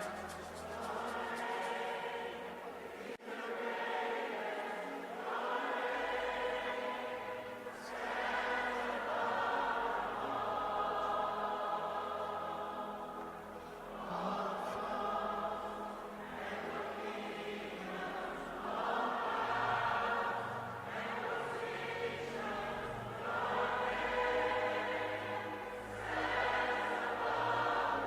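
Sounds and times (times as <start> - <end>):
sustained music: 0.0 - 3.2
choir singing gospel: 0.0 - 28.0.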